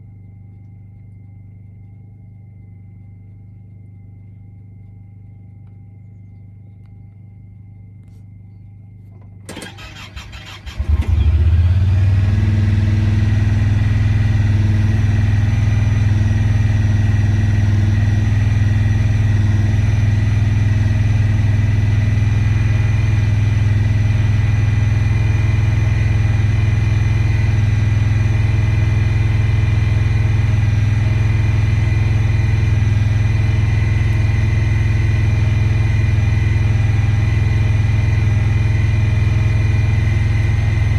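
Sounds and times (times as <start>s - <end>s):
engine starter cranking: 9.4s - 11.6s
engine idling: 9.4s - 40.9s.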